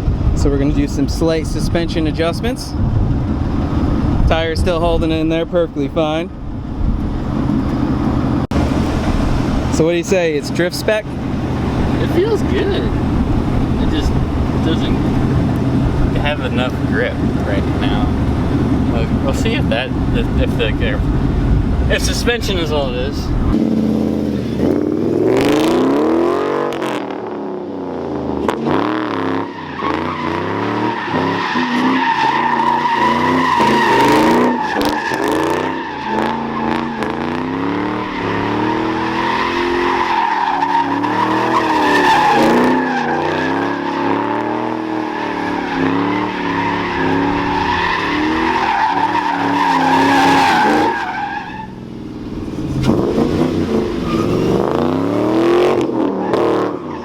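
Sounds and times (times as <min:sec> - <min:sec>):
car engine revving: 0:00.0 - 0:57.0
tyres squealing: 0:09.7 - 0:21.1, 0:29.5 - 0:51.8.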